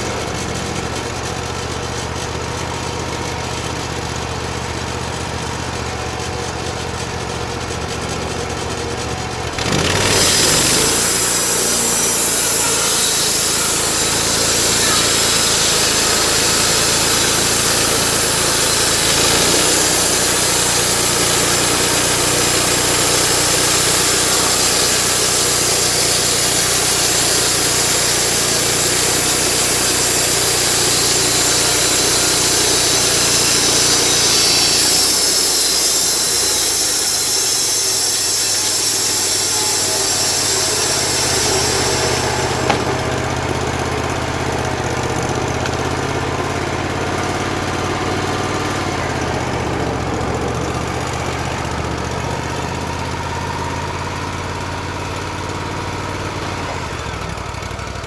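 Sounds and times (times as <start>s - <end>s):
sawmill engine running: 0.0s - 58.0s
band blade sawing log: 9.5s - 53.1s.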